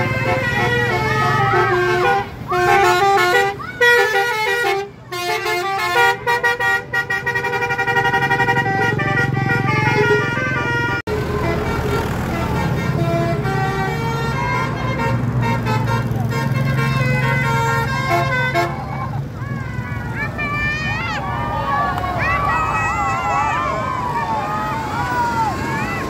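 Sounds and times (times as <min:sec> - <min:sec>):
bus horns playing melodies: 0:00.0 - 0:21.4
bus engine rumble: 0:00.0 - 0:26.0.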